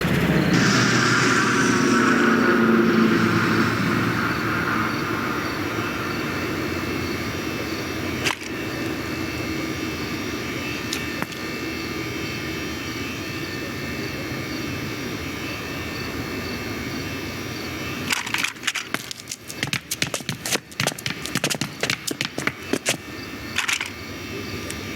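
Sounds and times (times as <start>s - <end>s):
truck engine and road noise: 0.0s - 9.0s.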